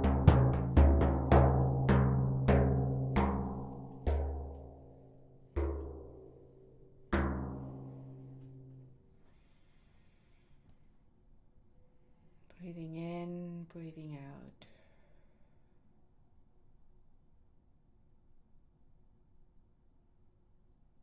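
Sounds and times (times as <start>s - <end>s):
deep drum beats ringing: 0.0s - 4.7s.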